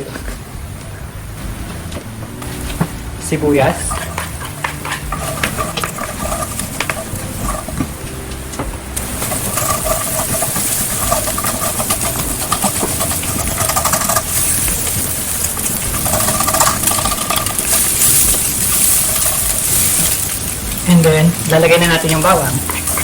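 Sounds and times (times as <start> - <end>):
onion sizzling in hot oil: 1.5 - 23.0.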